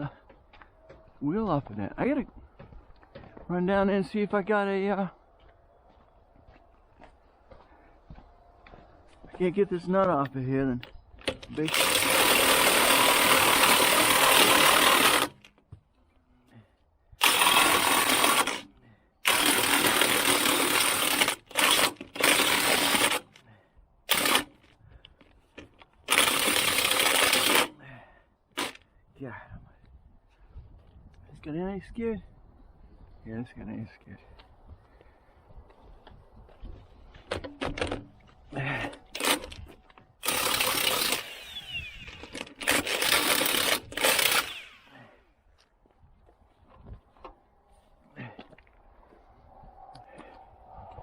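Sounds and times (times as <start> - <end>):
impact wrench bursts: 11.6 - 15.5, 17.2 - 23.4, 24.1 - 24.6, 26.1 - 27.8, 28.5 - 28.8, 38.9 - 39.6, 40.2 - 45.1.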